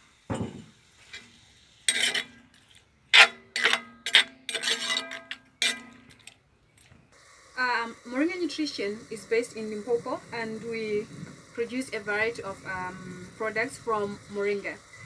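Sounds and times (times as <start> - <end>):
metal utensil clanking on wok: 1.9 - 6.3.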